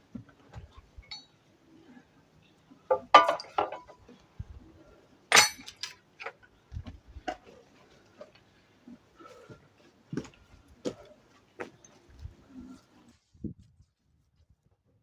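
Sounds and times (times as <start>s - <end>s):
brick rubble clattering: 2.9s - 4.0s.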